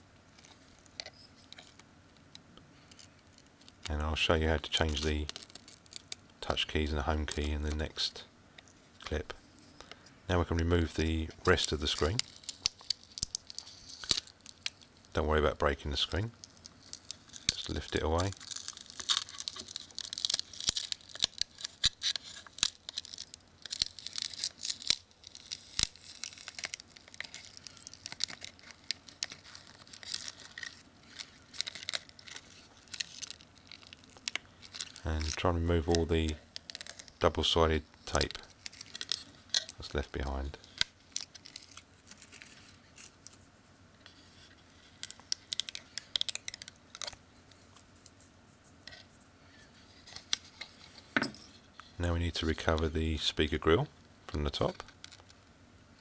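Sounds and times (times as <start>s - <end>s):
adhesive tape tearing: 16.4s - 35.4s.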